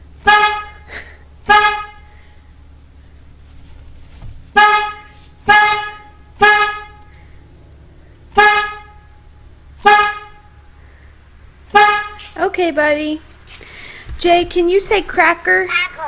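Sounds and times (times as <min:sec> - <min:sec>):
car horn toots: 0:00.2 - 0:02.2, 0:04.5 - 0:07.1, 0:08.3 - 0:09.2, 0:09.8 - 0:10.6, 0:11.7 - 0:12.3.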